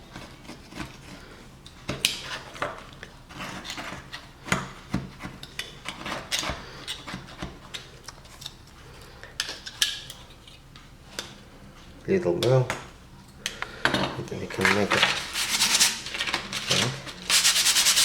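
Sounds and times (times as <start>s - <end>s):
hand tool scraping and filing: 3.3s - 4.6s, 14.6s - 18.0s.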